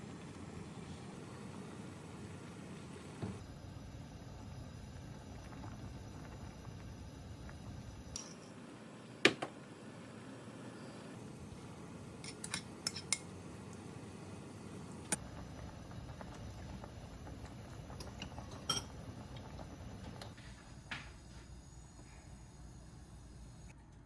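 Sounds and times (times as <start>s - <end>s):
utensils and dishes clinking: 18.5s - 19.0s.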